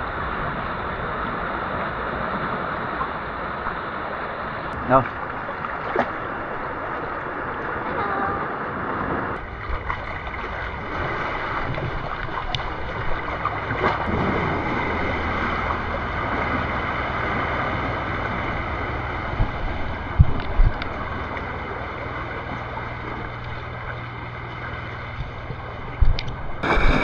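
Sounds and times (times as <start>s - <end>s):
wind buffeting microphone: 8.7s - 27.0s
ocean waves washing over rocks: 26.6s - 27.0s.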